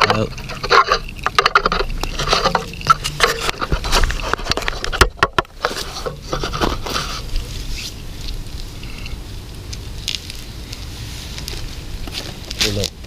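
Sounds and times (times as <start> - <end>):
scraping and rubbing: 0.0 - 9.2.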